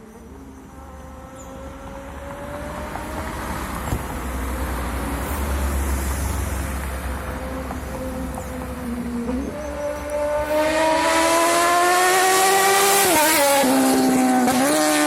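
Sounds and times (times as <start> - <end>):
motorcycle engine roaring: 7.4 - 15.0.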